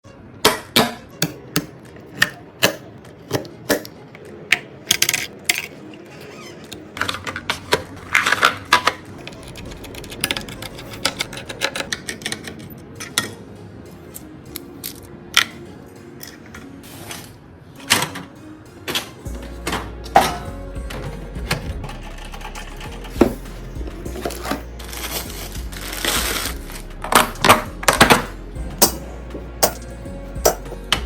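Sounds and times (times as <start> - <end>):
computer parts clicking and clattering: 4.5 - 5.9, 6.7 - 13.4, 17.8 - 29.0.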